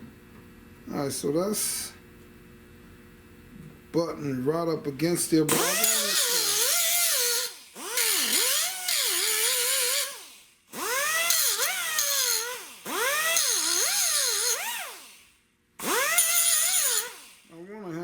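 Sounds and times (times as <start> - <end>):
high grinding hiss: 5.4 - 17.5
electric grinder grinding metal: 5.5 - 15.2, 15.8 - 17.5.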